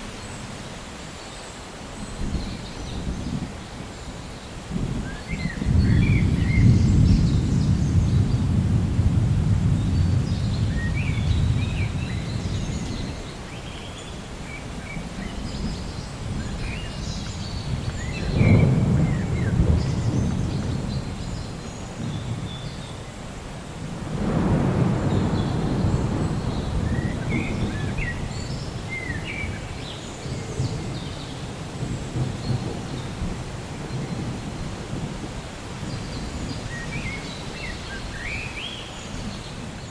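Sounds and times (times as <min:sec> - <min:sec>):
steady rain: 0:00.0 - 0:39.9
thunder rumbling: 0:04.7 - 0:13.5, 0:14.6 - 0:38.3
birds chirping: 0:09.7 - 0:23.3, 0:24.2 - 0:33.2.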